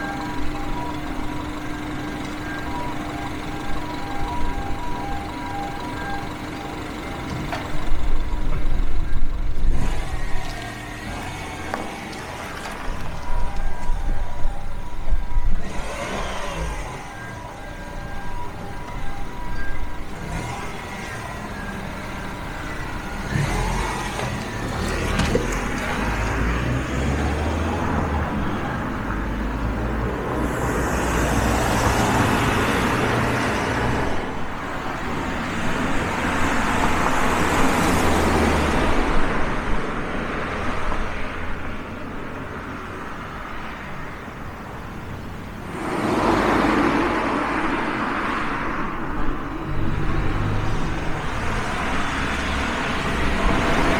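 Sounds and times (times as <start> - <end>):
car engine running: 0.0 - 27.6.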